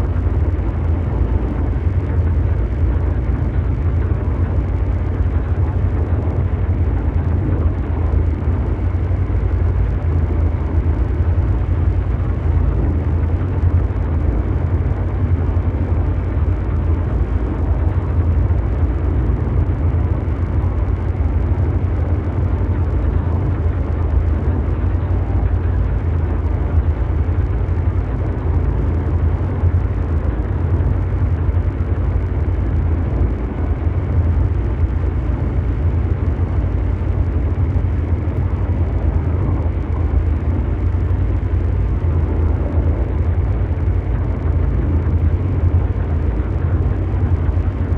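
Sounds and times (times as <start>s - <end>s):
deep mechanical drone: 0.0s - 47.9s.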